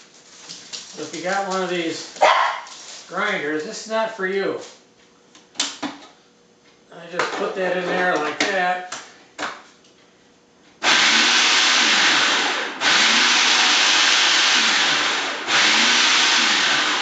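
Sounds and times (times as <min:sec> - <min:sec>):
electric grinder chopping bread: 0:10.8 - 0:17.0.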